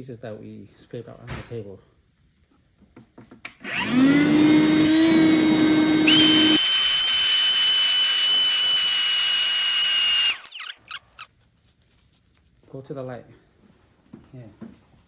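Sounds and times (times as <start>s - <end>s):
handheld vacuum cleaner whining: 3.6s - 11.3s.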